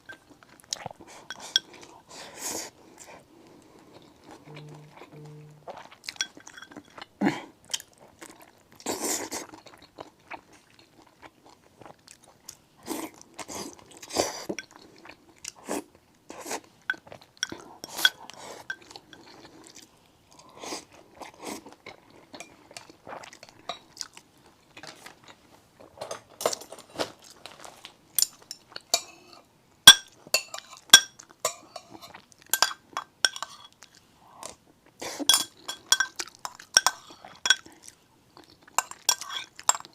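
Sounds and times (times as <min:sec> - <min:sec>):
dishes or utensils clinking: 0:06.2 - 0:07.0, 0:29.9 - 0:33.7, 0:35.3 - 0:37.7, 0:38.8 - 0:39.9.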